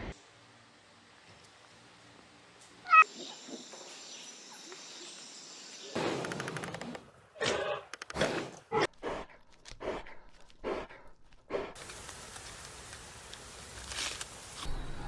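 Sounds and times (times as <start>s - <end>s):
faint steady hiss: 11.8s - 15.0s.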